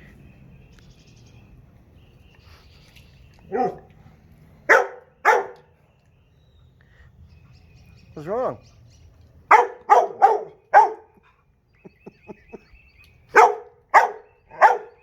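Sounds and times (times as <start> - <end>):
dog barking: 3.5 - 3.9, 4.7 - 5.7, 9.5 - 11.1, 13.3 - 15.0.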